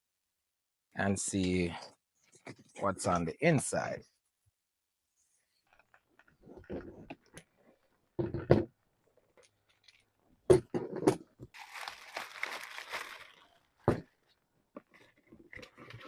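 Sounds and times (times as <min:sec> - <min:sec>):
packaging tearing and crinkling: 0:11.6 - 0:13.6.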